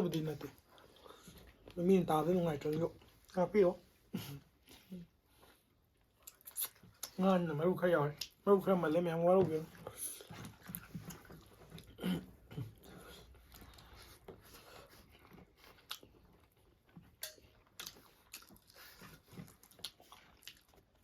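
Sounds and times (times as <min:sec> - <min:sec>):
mouth smacks and clicks: 0:06.2 - 0:07.2
chewing and biting food: 0:09.7 - 0:21.0.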